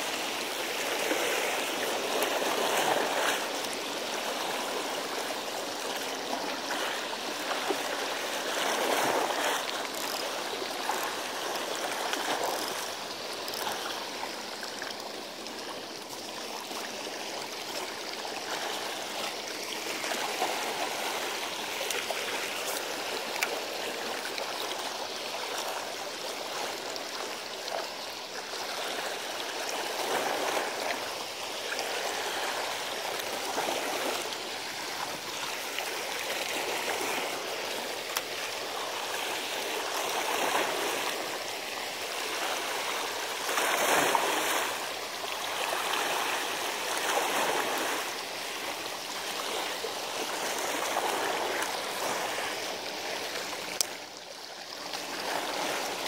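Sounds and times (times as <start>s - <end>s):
seawater washing against rocks: 0.0s - 24.9s.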